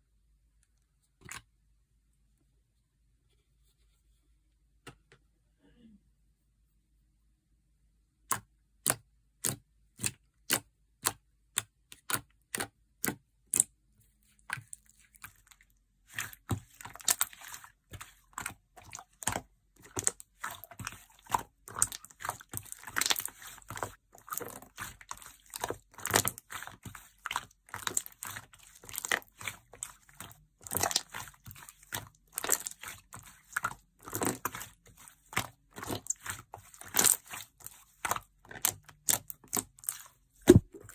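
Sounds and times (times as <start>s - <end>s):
slime crackling and crunching: 16.2s - 40.9s.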